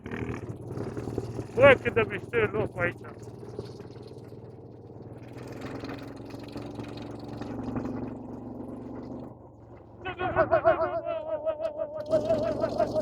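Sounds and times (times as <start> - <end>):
vehicle engine running: 0.0 - 10.2
warbling voice-like call: 10.0 - 13.0.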